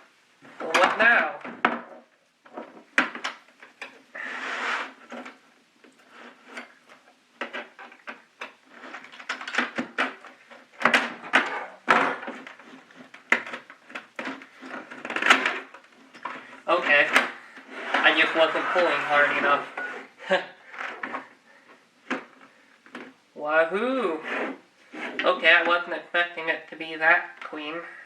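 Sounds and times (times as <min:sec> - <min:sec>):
plastic scrape: 0:02.5 - 0:21.4, 0:24.2 - 0:25.6.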